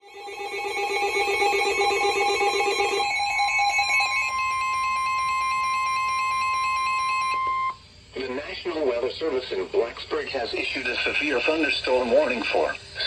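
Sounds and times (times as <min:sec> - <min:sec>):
electronic alert warbling tone: 0:00.0 - 0:07.8
steady high alarm tone: 0:00.0 - 0:07.8.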